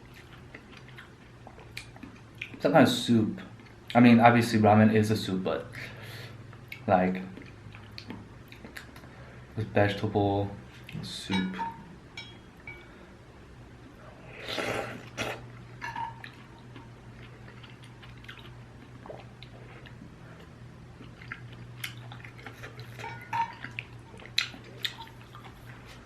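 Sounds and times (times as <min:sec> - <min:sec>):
wet chewing: 0:00.0 - 0:02.6, 0:06.5 - 0:09.1, 0:14.4 - 0:26.0
steady low hum: 0:00.0 - 0:26.0
utensils tapping a bowl: 0:11.3 - 0:12.9
person slurping noodles: 0:14.3 - 0:15.4.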